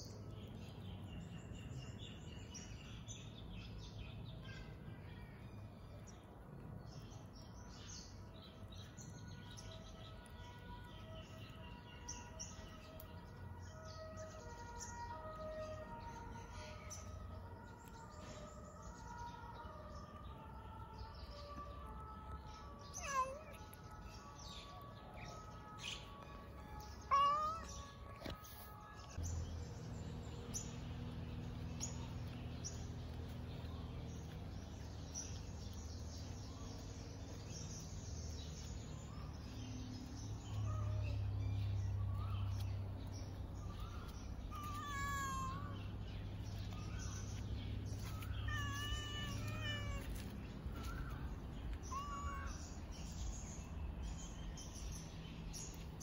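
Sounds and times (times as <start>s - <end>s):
cat meowing: 22.9s - 23.7s, 27.0s - 28.2s, 44.4s - 45.8s, 48.0s - 50.3s, 51.7s - 52.8s.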